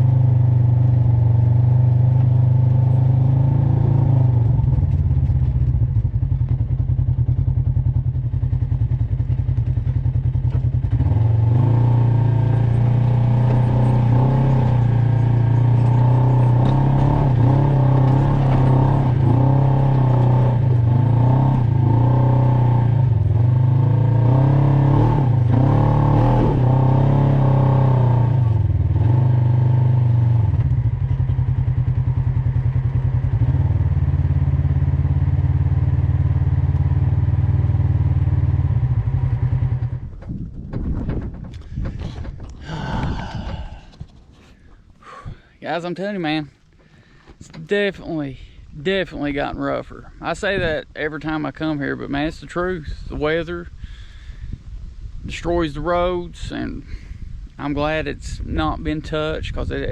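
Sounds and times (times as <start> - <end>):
off-road vehicle engine: 0.0 - 59.9
vehicle rattle: 1.9 - 24.1, 39.2 - 53.6.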